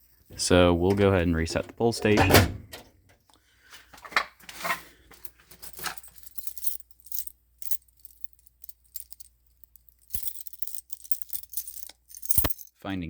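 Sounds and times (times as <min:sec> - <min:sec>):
keys jangling: 0:05.2 - 0:12.8.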